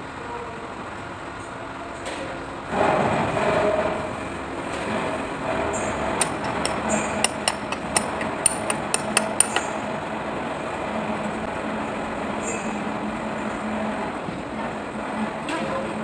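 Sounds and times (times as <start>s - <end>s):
steady background hum: 0.0s - 16.0s
quick metallic taps and clinks: 6.2s - 9.7s.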